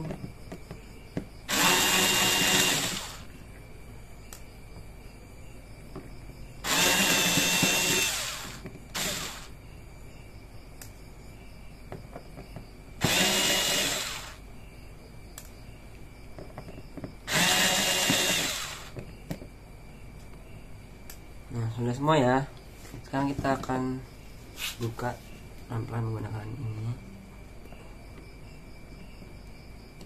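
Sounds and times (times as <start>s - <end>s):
small electric drill whining: 1.5s - 3.4s, 6.6s - 9.6s, 13.0s - 14.4s, 17.3s - 19.0s.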